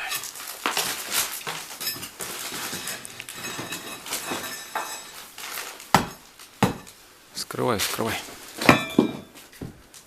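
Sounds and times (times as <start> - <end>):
bricks clinking and scraping: 0.0 - 7.0.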